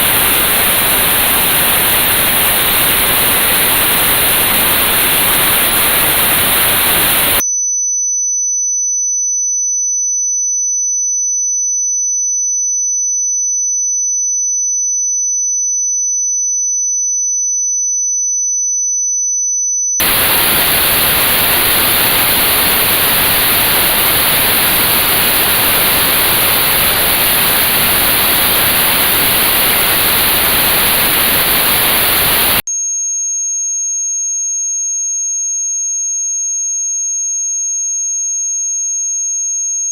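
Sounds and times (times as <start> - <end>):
notched white noise: 0.0 - 7.4, 20.0 - 32.6
very high pure tone: 20.0 - 32.6.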